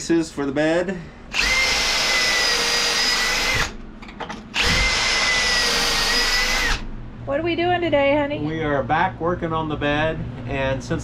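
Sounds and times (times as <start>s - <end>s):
electric drill whining: 1.3s - 3.8s, 4.5s - 6.9s.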